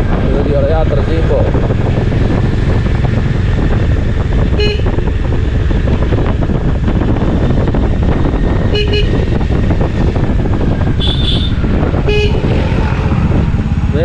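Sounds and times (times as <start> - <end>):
heavy wind: 0.0 - 14.0
motorcycle road rumble: 0.0 - 14.0
motorcycle horn beeps: 4.5 - 5.2, 8.6 - 9.4, 11.0 - 12.6.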